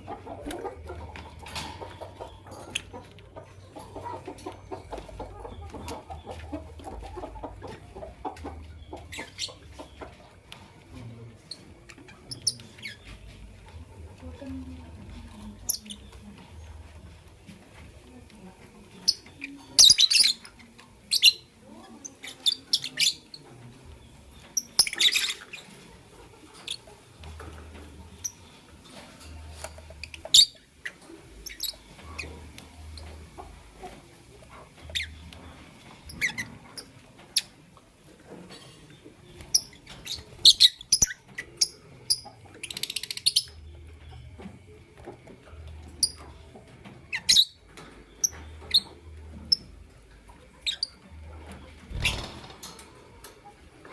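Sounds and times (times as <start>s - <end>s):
lovebirds chirping: 0.0s - 37.7s, 38.5s - 53.9s.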